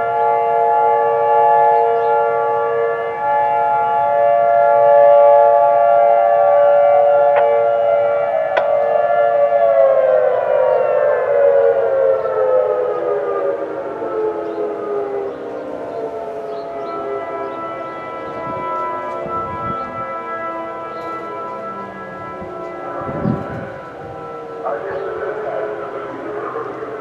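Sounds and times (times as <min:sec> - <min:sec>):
warning siren winding down: 0:00.0 - 0:27.0.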